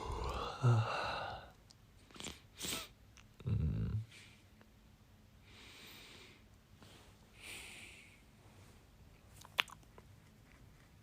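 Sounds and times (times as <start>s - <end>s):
soft breathing: 0.0s - 2.4s, 5.4s - 9.0s.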